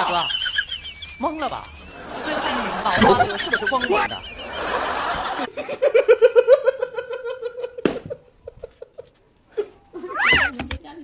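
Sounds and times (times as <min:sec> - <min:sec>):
person laughing: 0:02.2 - 0:10.4.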